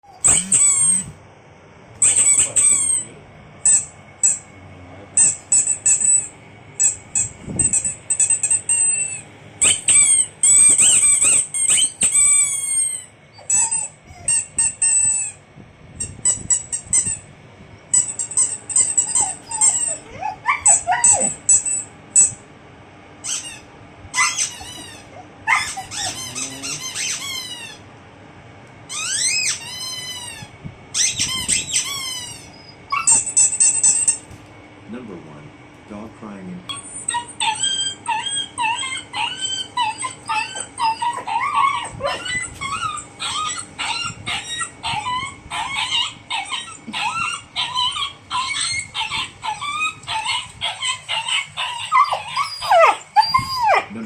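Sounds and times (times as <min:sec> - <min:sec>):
rapid high-pitched squeaking: 0:00.1 - 0:01.1, 0:02.0 - 0:04.5, 0:05.2 - 0:15.4, 0:18.0 - 0:22.4, 0:24.2 - 0:27.8, 0:28.9 - 0:34.3, 0:36.7 - 0:53.8
lower sliding squeals: 0:36.7 - 0:54.0.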